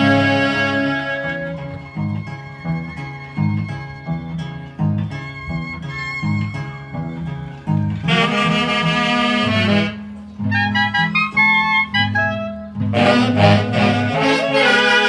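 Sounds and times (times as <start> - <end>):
saxophones playing: 0.0 - 3.3, 7.8 - 15.0
plucked bass line: 0.0 - 14.3.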